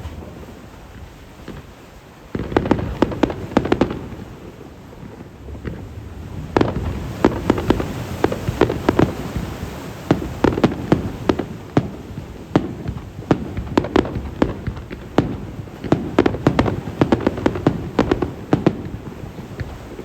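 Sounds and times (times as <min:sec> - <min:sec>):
firework shells bursting: 0:06.6 - 0:20.0.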